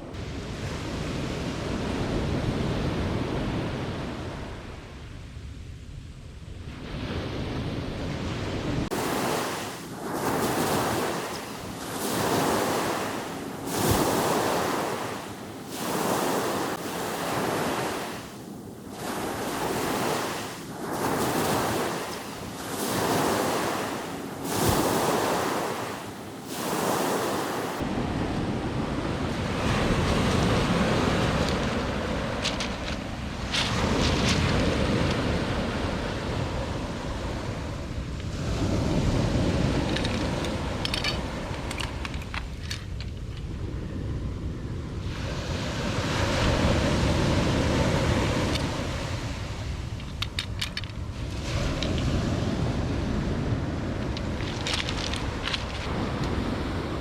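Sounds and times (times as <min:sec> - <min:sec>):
surf on the shore: 0:00.0 - 0:57.0
wind: 0:00.0 - 0:57.0.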